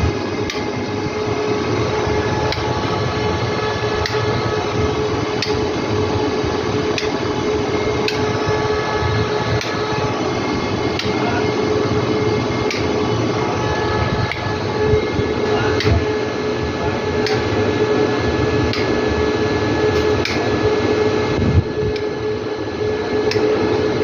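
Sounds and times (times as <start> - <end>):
generator humming: 0.0 - 24.0.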